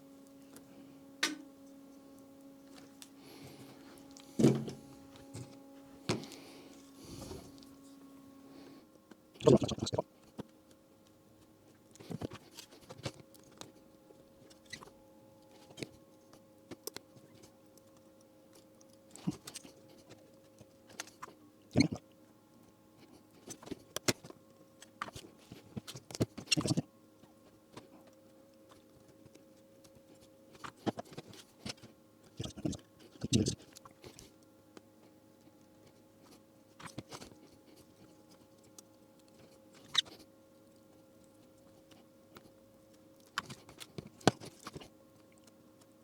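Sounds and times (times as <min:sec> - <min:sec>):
faint steady hum: 0:00.0 - 0:46.0
hands handling wires and parts: 0:00.2 - 0:08.1.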